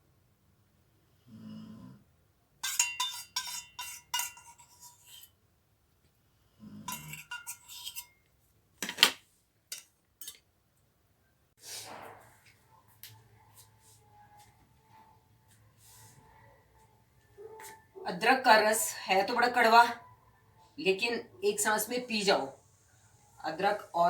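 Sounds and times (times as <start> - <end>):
metal spoon clinking on dish: 2.6 - 5.3, 6.9 - 8.2, 9.7 - 10.4.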